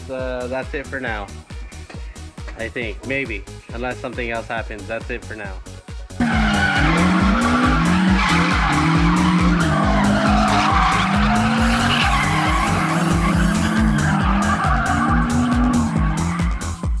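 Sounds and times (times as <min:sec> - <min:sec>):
outro music with thumping beat: 0:05.8 - 0:17.0.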